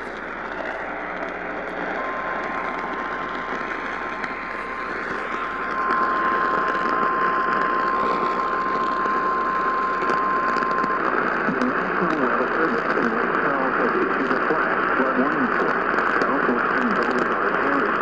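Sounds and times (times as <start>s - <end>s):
radio static hiss: 0.0s - 18.0s.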